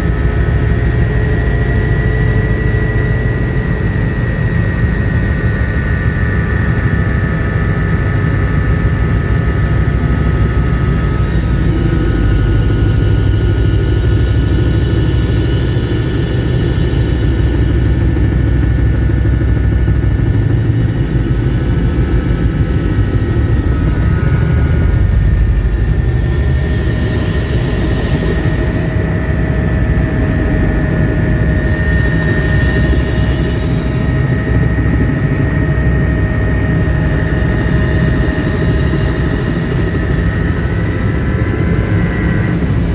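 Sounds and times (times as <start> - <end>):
helicopter rotor and engine rumble: 0.0 - 42.9
thin high whine: 0.0 - 42.9.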